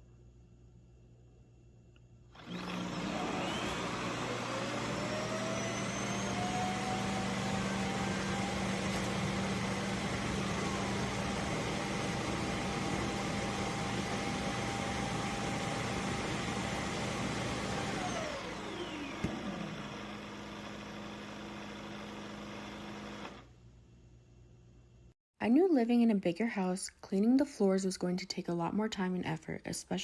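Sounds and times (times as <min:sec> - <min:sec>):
vacuum motor whine: 0:02.4 - 0:23.5.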